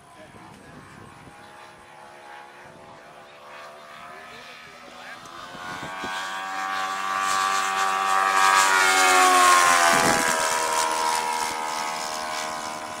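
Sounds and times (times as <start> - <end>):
model airplane propeller engine: 0.0 - 13.0.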